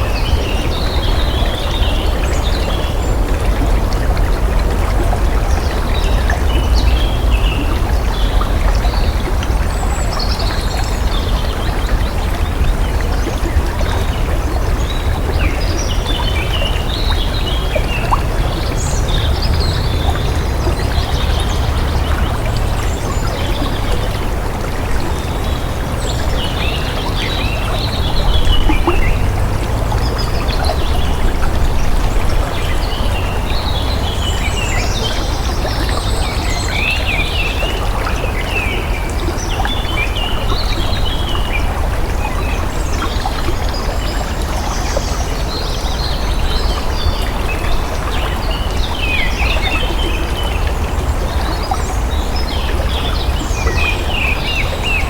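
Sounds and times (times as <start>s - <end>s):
water flowing: 0.0s - 55.0s
birds chirping: 25.1s - 38.9s.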